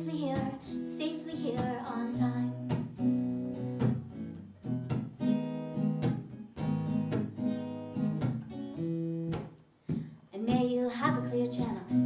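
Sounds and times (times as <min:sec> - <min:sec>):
acoustic guitar strumming chords: 0:00.0 - 0:09.6.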